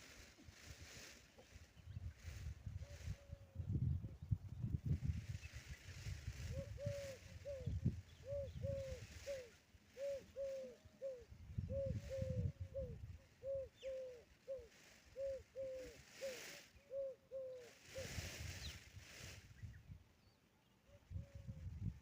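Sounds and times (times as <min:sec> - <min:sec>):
bird calling: 0:06.5 - 0:18.7.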